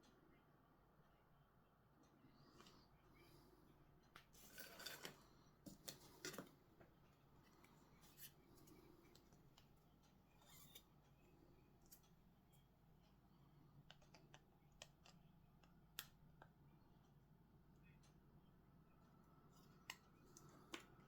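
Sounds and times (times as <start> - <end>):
faint clicks on plastic parts: 2.0 - 2.9, 4.0 - 18.2, 19.0 - 21.0
short scrapes of plastic parts: 4.4 - 6.5.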